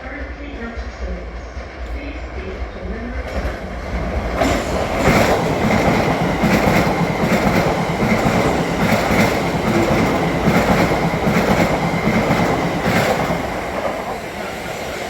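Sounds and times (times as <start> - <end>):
train rumble: 0.0 - 15.0
train wheels clacking over rail joints: 4.4 - 14.4.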